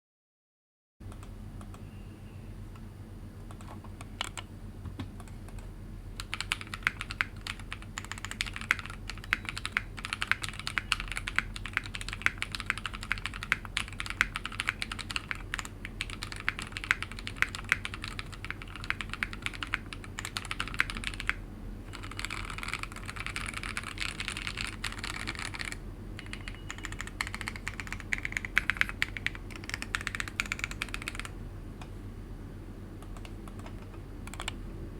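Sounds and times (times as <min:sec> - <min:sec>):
typing on mechanical keyboard: 0:06.2 - 0:31.3, 0:33.1 - 0:34.6.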